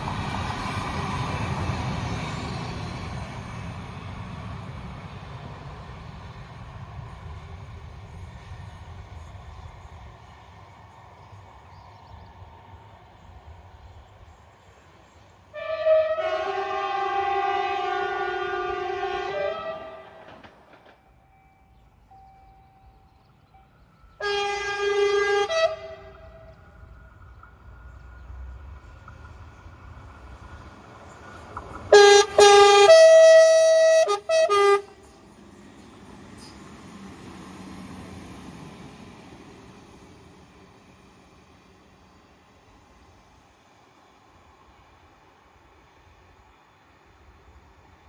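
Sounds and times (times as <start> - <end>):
low rumble of approaching train: 0.0 - 48.0
train horn: 15.5 - 20.4, 24.2 - 26.5, 31.9 - 35.2.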